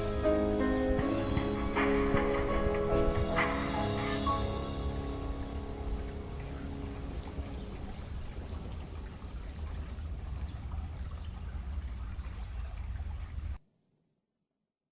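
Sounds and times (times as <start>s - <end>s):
background music: 0.0s - 8.2s
running water splashing: 0.0s - 13.6s.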